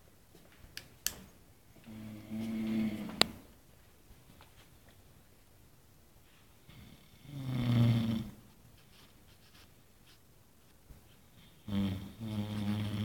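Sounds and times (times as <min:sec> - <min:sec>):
man snoring loudly: 0:07.0 - 0:08.3.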